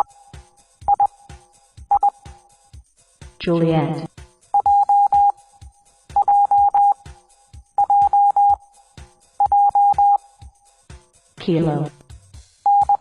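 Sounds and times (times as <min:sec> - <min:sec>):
morse code beeps: 0:00.9 - 0:01.1, 0:01.9 - 0:02.2, 0:04.5 - 0:05.4, 0:06.2 - 0:07.0, 0:07.8 - 0:08.6, 0:09.4 - 0:10.2, 0:12.7 - 0:13.0.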